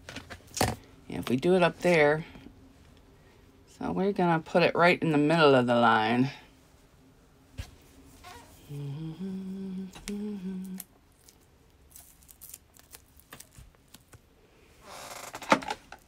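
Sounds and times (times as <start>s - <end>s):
person humming: 8.3s - 10.9s.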